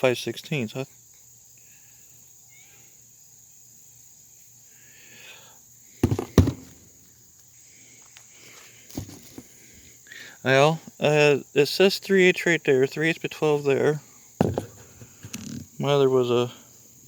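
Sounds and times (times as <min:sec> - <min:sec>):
tools knocking: 0:06.0 - 0:06.7, 0:14.4 - 0:14.8.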